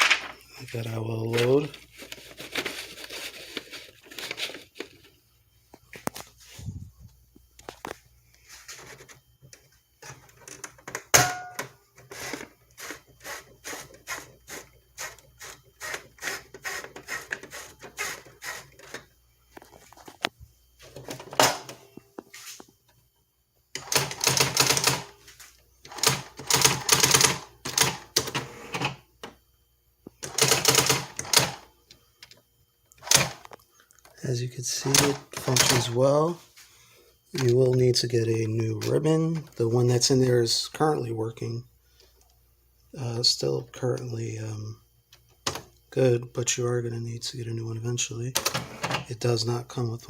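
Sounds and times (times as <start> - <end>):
typewriter clacking: 23.8 - 25.1, 25.9 - 28.9, 30.2 - 31.6, 34.8 - 35.9.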